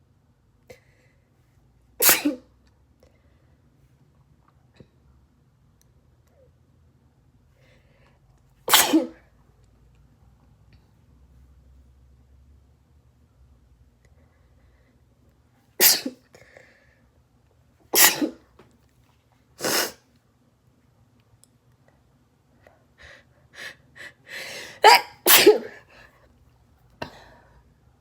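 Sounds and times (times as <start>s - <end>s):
person sneezing: 2.0s - 2.5s, 8.7s - 9.2s, 15.8s - 16.2s, 18.0s - 18.5s, 19.6s - 20.1s, 24.5s - 25.9s.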